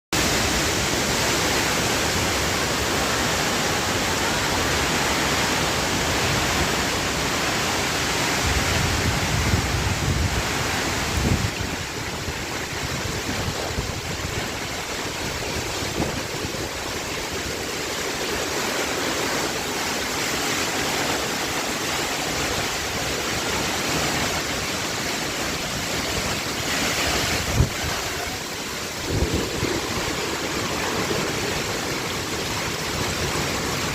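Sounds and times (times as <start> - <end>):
heavy rain pouring: 0.2 - 33.9
wind buffeting microphone: 8.2 - 18.0, 25.0 - 33.4.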